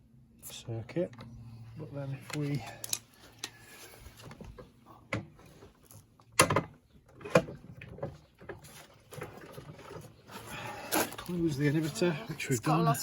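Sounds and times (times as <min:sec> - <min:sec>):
knocks and clatters of parts handled: 0:02.2 - 0:10.2.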